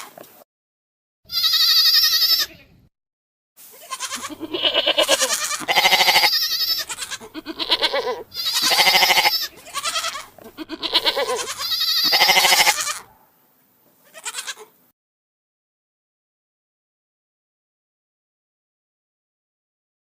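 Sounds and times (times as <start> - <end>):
goat bleating: 1.3 - 2.8, 3.7 - 13.2, 14.0 - 14.7.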